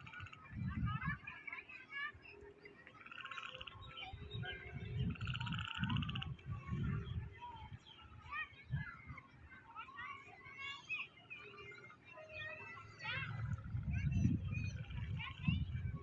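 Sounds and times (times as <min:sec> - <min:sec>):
wind buffeting microphone: 0:00.0 - 0:01.4, 0:03.7 - 0:09.3, 0:13.1 - 0:16.0
birds chirping: 0:00.0 - 0:16.0.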